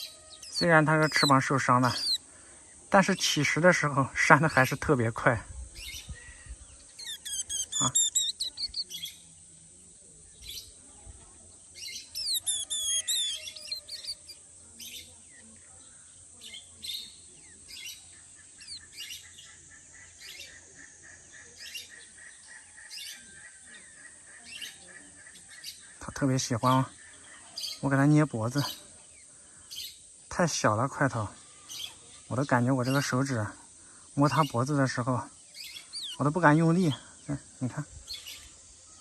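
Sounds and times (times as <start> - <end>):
bird begging chirps: 0.0 - 2.2, 6.8 - 9.2, 11.8 - 15.0, 18.6 - 19.3, 35.6 - 37.0
bird twittering: 0.0 - 2.2, 5.8 - 9.2, 11.8 - 15.0, 16.9 - 19.6, 35.6 - 37.0.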